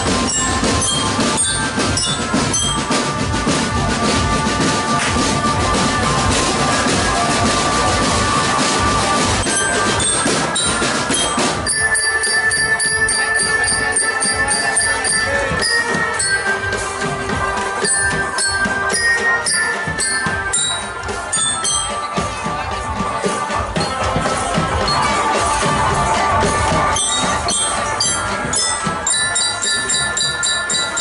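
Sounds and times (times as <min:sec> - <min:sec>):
bell-like melody notes: 0:00.0 - 0:03.3, 0:09.4 - 0:31.0
marching drum band playing: 0:00.0 - 0:31.0
held tone: 0:09.4 - 0:17.1, 0:17.8 - 0:22.2, 0:27.0 - 0:31.0.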